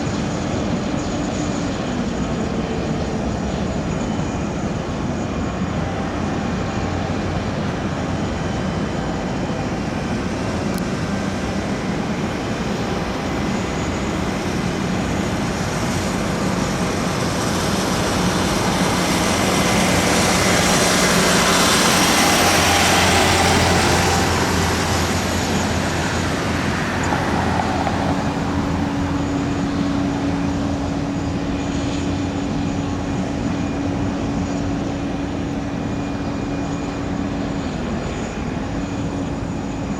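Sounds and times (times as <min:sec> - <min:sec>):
jet engine rushing: 0:00.0 - 0:39.9
steady droning tone: 0:19.0 - 0:38.6.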